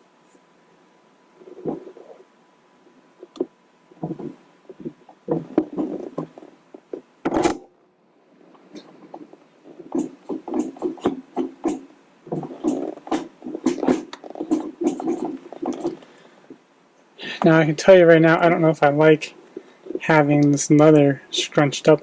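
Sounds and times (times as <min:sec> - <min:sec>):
rubbing and light knocks: 0:03.2 - 0:07.5, 0:08.6 - 0:16.1.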